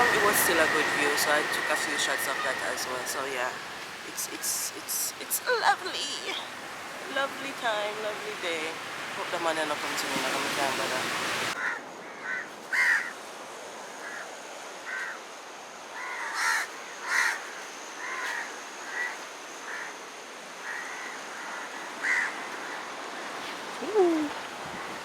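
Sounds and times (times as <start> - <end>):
background hiss: 0.0 - 11.6
crow cawing: 11.6 - 13.1, 14.0 - 14.3, 14.9 - 15.2, 16.0 - 20.0, 20.6 - 22.8.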